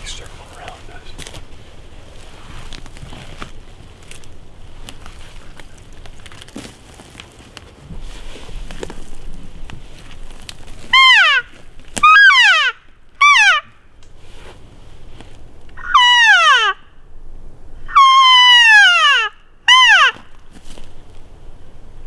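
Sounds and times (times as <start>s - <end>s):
elk mewing calls: 10.9s - 13.7s, 15.8s - 16.8s, 17.8s - 20.3s.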